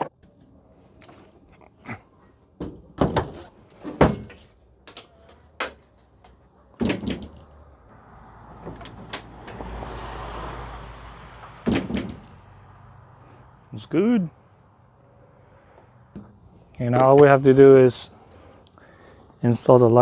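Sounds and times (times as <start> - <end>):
tailgate clunks and latch knocks: 11.6 - 12.4.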